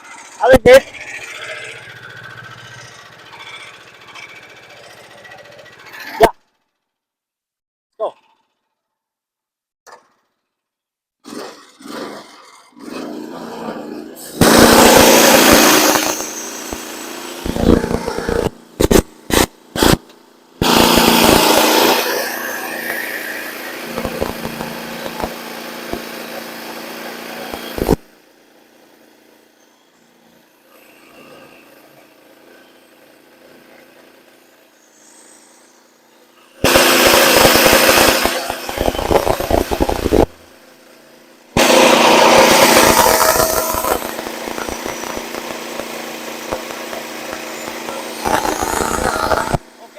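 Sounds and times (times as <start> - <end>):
sawmill engine cutting log: 0.0 - 6.2, 11.3 - 29.2, 30.0 - 49.9.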